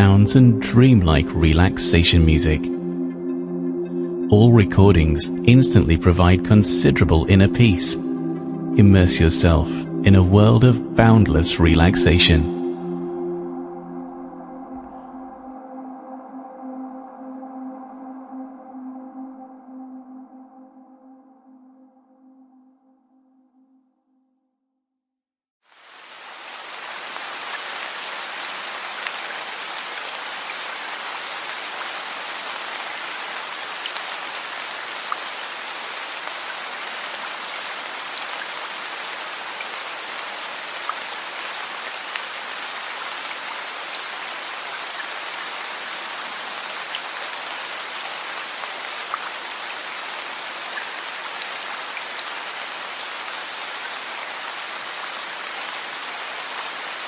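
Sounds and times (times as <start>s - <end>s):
steady rain hiss: 25.6s - 57.0s
raindrops ticking: 46.7s - 54.3s.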